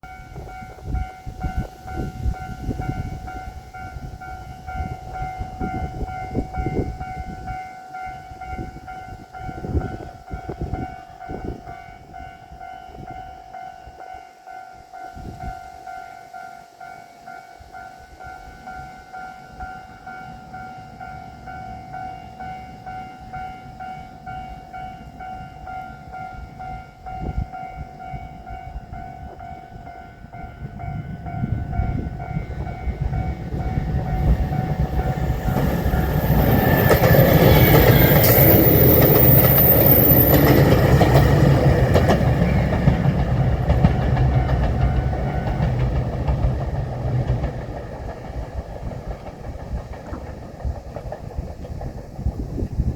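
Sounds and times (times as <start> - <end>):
diesel train passing: 15.0 - 52.9
wheels clacking over rail joints: 32.2 - 52.6.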